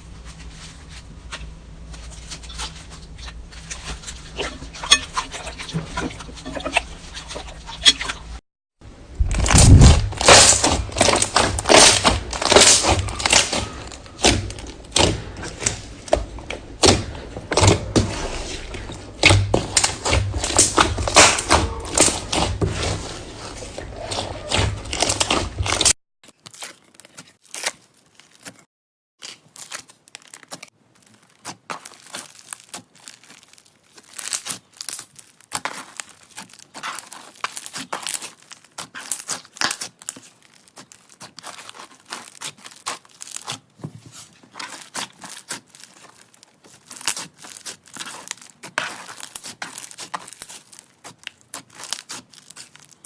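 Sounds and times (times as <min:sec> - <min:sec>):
slime squeezing sticky pops: 0:29.2 - 0:43.8, 0:44.4 - 0:53.0.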